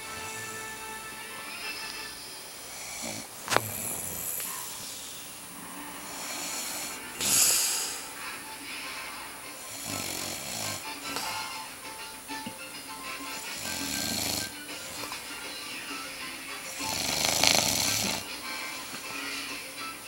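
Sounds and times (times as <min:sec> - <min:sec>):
man snoring: 0:02.7 - 0:04.6, 0:05.6 - 0:08.2, 0:09.6 - 0:11.6, 0:13.2 - 0:15.1, 0:16.7 - 0:19.4.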